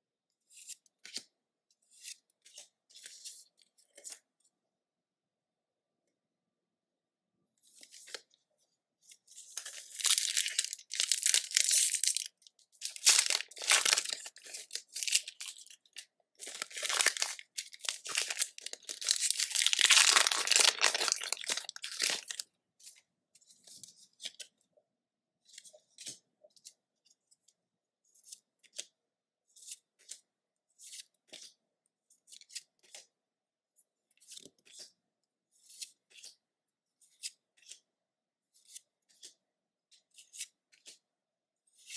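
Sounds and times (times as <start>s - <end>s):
foil wrapper tearing and crinkling: 9.6s - 15.8s, 16.4s - 22.4s.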